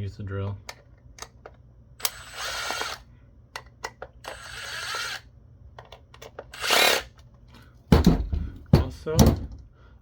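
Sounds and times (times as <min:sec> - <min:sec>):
small clicks of bit and screws: 0:00.6 - 0:05.2, 0:05.8 - 0:07.3
power drill whining: 0:02.0 - 0:03.1, 0:04.2 - 0:05.3, 0:06.5 - 0:07.1.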